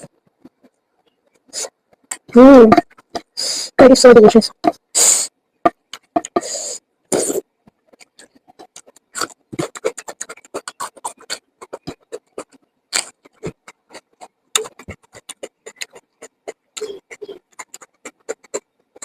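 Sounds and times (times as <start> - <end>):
chewing and lip smacking: 7.9 - 19.0.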